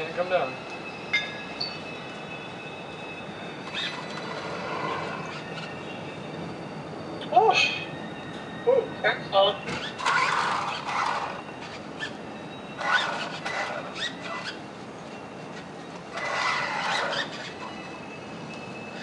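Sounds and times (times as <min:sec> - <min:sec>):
electric toy car motor whining: 0:09.8 - 0:12.2, 0:12.8 - 0:14.6, 0:16.1 - 0:17.8
wheels rubbing on floor: 0:15.6 - 0:17.8.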